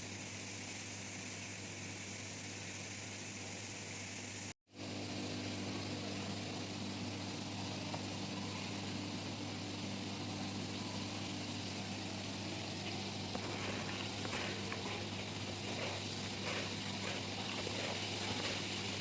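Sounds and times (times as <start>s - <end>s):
motor humming: 4.8s - 19.0s.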